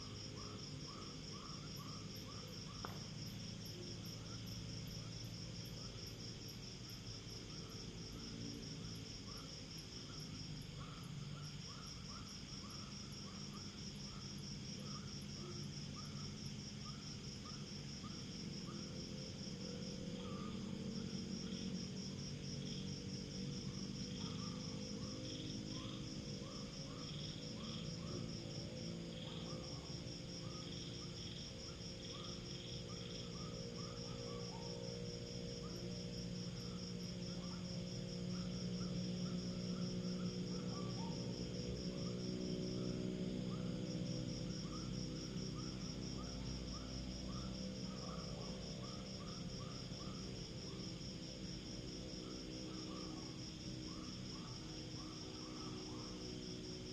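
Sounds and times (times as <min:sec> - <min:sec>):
insect chirps: 0:00.0 - 0:56.9
insects trilling: 0:00.0 - 0:56.9.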